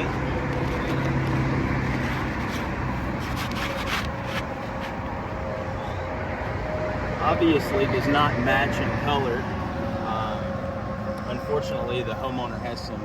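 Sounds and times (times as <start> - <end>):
outdoor rumble: 0.0 - 13.0
shingle scraping on roof: 1.8 - 5.0.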